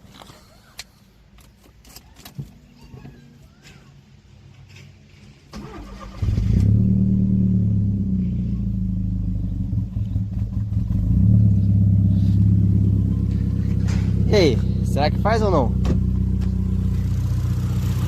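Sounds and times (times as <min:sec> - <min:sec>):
car engine starting and idling: 0:05.0 - 0:18.0.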